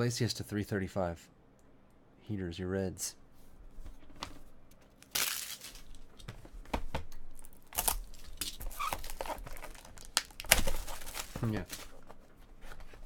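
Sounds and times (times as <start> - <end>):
card packaging torn and crinkled: 5.0 - 6.0, 7.4 - 12.0.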